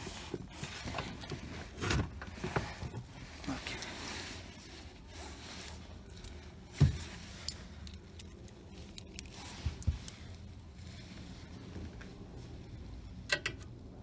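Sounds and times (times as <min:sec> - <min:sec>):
tools and parts knocking and clicking: 0:13.3 - 0:13.7.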